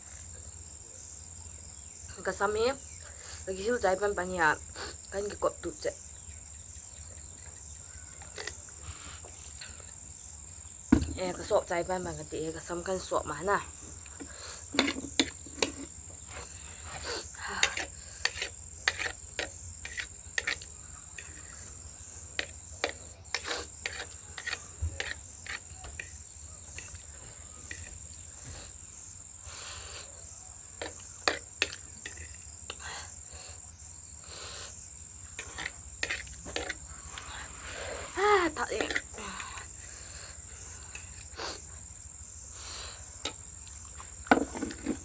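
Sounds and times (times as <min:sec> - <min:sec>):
crickets chirring: 0:00.0 - 0:45.0
slurping and chewing: 0:14.1 - 0:28.8
utensils clicking against a bowl: 0:17.5 - 0:21.6, 0:22.4 - 0:26.2, 0:27.7 - 0:28.0, 0:30.8 - 0:32.8, 0:35.4 - 0:36.8.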